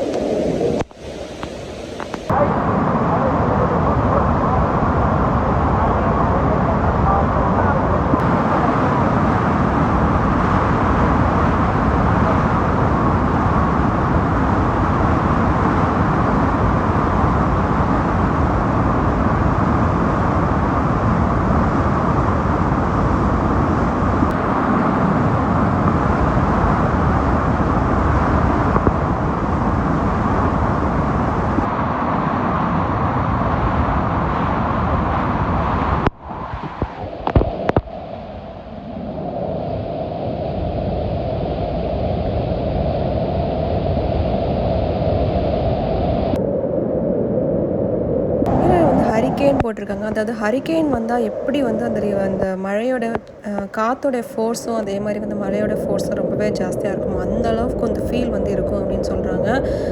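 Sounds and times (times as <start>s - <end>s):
waterfall roaring: 48.5s - 58.4s.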